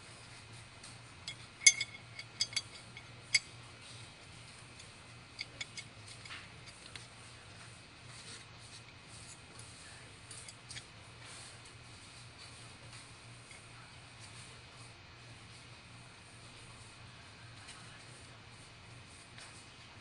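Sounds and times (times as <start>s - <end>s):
metal parts clinking and clicking: 1.2s - 3.5s, 4.8s - 7.0s.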